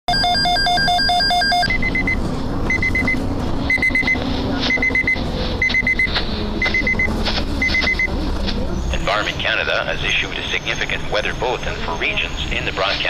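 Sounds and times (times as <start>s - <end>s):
short high beeps: 0.1s - 8.1s
alternating electronic beeps: 0.1s - 12.9s.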